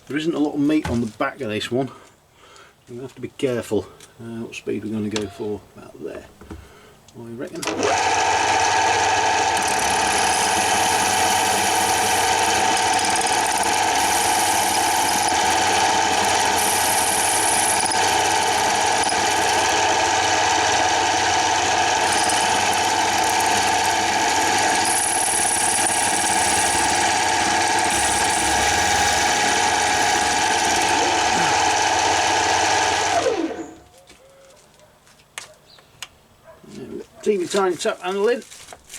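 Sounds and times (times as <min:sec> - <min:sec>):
milling machine spindle running: 0:07.6 - 0:33.8
high cutting squeal: 0:22.0 - 0:33.9.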